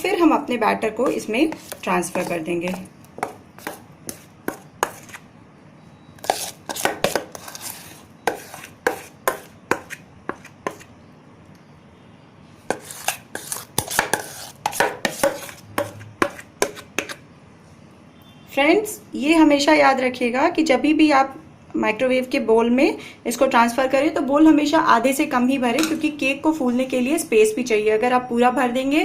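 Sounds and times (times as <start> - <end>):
spoon scraping and tapping bowl: 1.0 - 5.2, 6.2 - 10.9, 12.7 - 17.2, 25.7 - 26.1.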